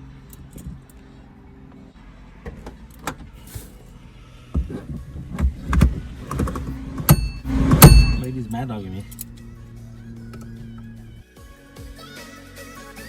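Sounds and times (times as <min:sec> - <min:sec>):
handling clicks and knocks: 0:04.5 - 0:08.3
heavy low thumps: 0:04.5 - 0:08.7.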